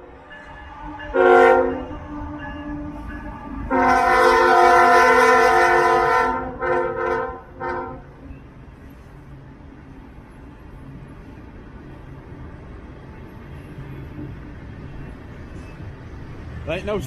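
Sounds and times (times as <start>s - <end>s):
locomotive air horn: 0.0s - 8.1s.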